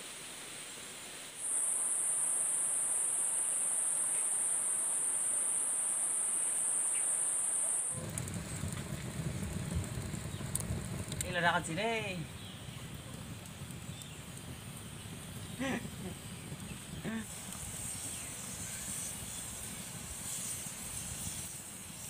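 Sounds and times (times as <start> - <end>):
high-pitched insect buzz: 1.4 - 8.0, 15.4 - 22.0
low rumble: 8.0 - 17.2.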